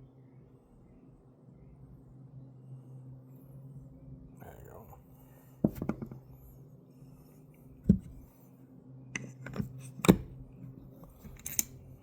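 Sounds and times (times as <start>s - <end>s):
light clicks of metal parts: 11.0s - 11.9s.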